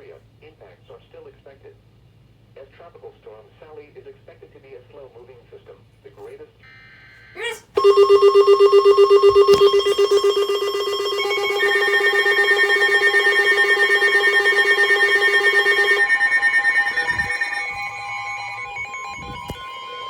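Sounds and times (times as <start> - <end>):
electronic emergency alert tones: 7.4 - 20.0.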